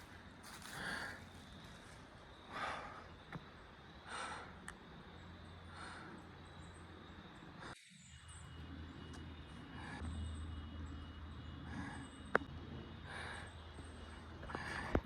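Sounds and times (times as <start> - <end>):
footsteps on trail: 0.0 - 2.0
person breathing: 0.5 - 1.6, 13.0 - 15.0.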